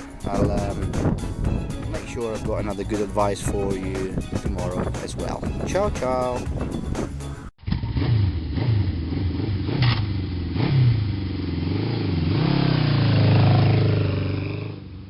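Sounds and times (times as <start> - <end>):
motorcycle engine accelerating: 7.6 - 15.0.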